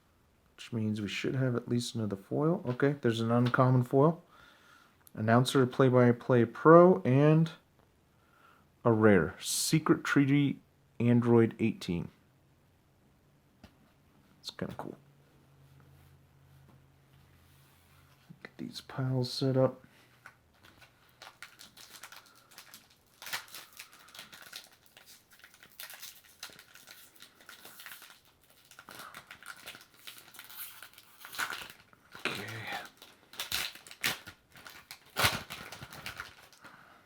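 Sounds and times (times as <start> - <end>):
foil wrapper crinkling: 20.2 - 36.8.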